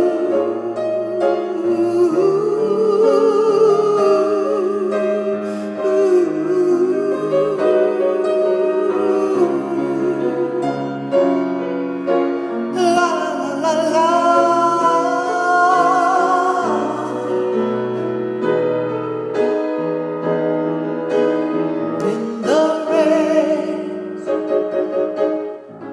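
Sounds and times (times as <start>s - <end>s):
person singing long notes: 0.0s - 11.7s, 12.6s - 18.6s, 22.0s - 25.0s
solo piano accompaniment: 0.0s - 25.9s.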